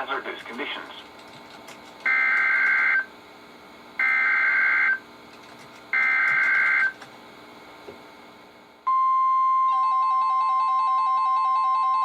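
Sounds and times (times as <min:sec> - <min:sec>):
radio hiss: 0:00.0 - 0:01.1.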